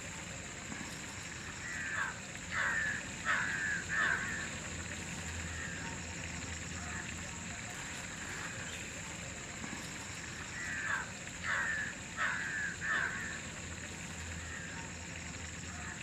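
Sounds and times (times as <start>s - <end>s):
steady high-pitched whine: 0.0s - 16.0s
crow cawing: 1.6s - 4.7s, 10.5s - 13.5s.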